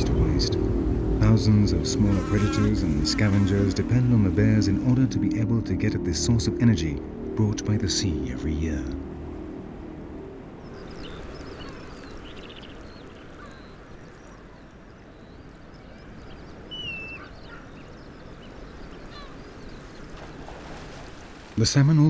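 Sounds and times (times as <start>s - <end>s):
birds chirping and squealing: 0.0s - 5.5s, 10.6s - 21.2s.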